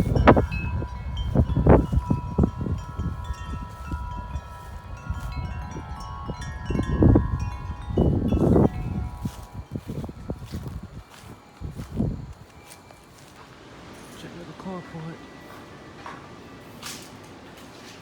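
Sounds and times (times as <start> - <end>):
wind rumbling on microphone: 0.0 - 13.4
wind chimes ringing: 0.0 - 18.0.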